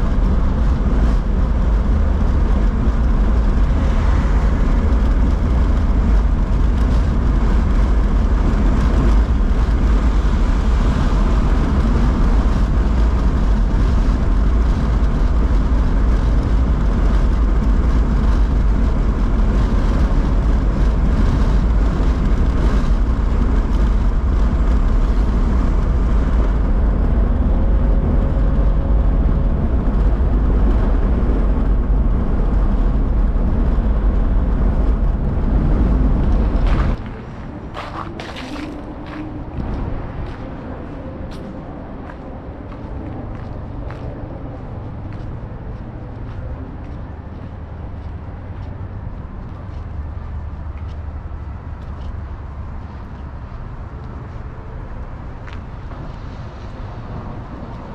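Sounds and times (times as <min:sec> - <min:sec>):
city street traffic rumble: 0:00.0 - 0:57.9.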